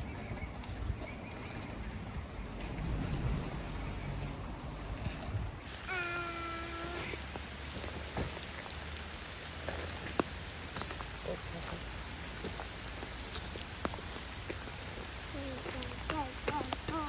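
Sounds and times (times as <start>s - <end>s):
steady rain: 5.6s - 17.0s.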